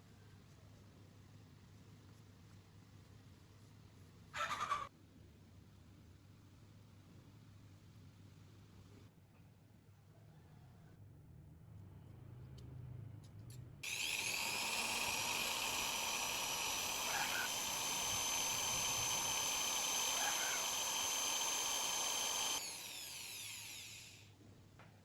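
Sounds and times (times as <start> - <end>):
power tool whining: 13.8 - 24.3.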